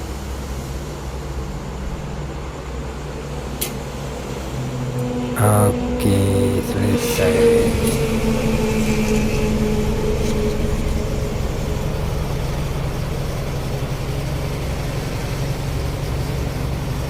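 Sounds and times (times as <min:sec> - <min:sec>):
diesel engine idling: 0:04.8 - 0:16.6.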